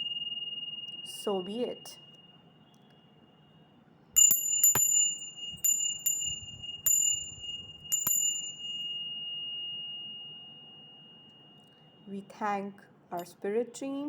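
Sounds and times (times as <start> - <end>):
metal chime ringing: 0.0 - 2.5, 4.2 - 12.2.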